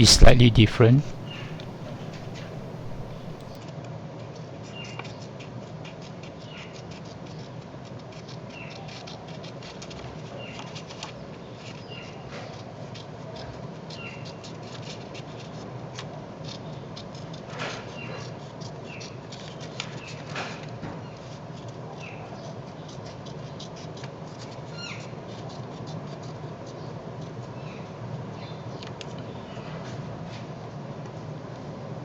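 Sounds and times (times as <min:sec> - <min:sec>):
low hum: 0:00.0 - 0:03.6.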